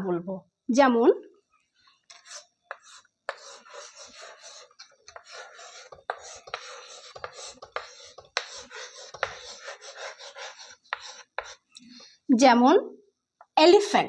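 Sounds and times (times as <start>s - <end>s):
pen scratching on surface: 2.1s - 11.7s.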